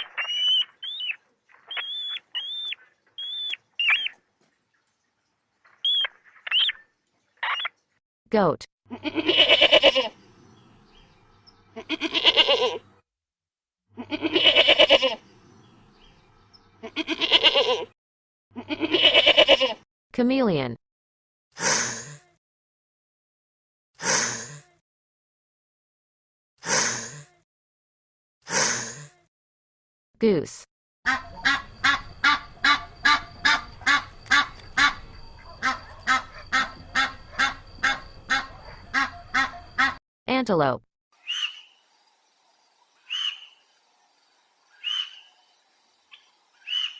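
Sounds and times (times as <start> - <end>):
goat bleating: 8.9 - 10.2, 11.7 - 12.8, 14.0 - 15.2, 16.8 - 17.9, 18.6 - 19.8
goose honking: 31.1 - 40.0.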